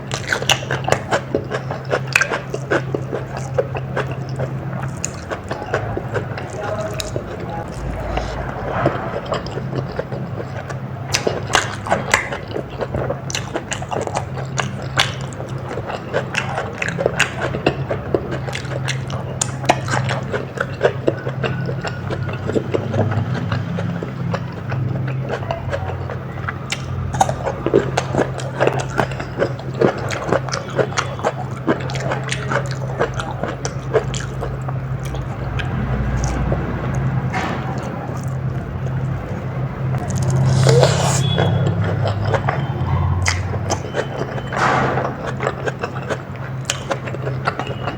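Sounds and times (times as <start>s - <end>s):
chewing and biting: 0.0s - 47.9s
low hum: 7.4s - 11.0s.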